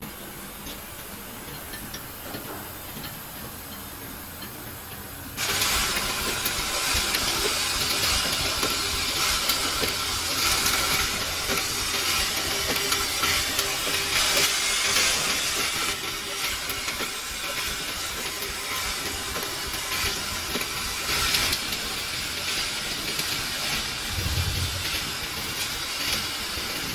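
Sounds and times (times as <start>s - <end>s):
production line machinery running: 4.8s - 26.9s
loud steady hiss: 5.4s - 17.5s.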